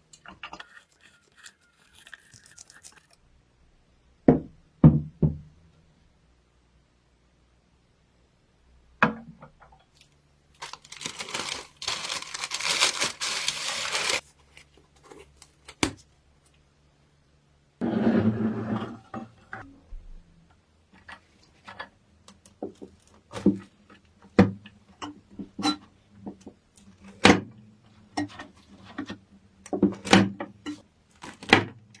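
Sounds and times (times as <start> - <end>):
faint low hum: 5.4 - 22.4
rustling: 10.6 - 15.4.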